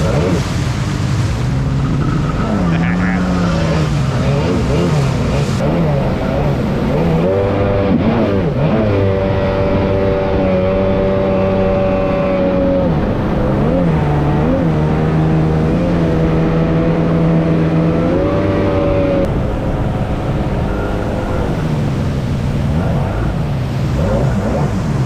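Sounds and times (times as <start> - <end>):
personal watercraft engine running: 0.0 - 25.0.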